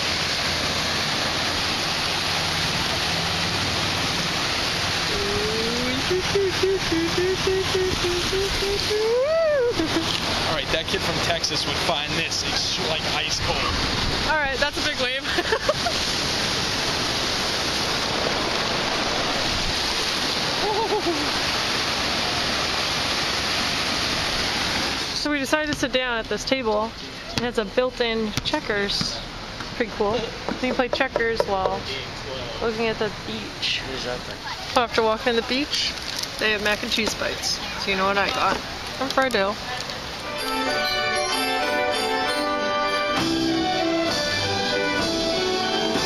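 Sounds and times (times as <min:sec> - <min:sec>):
ocean surf hissing: 0:00.0 - 0:25.2.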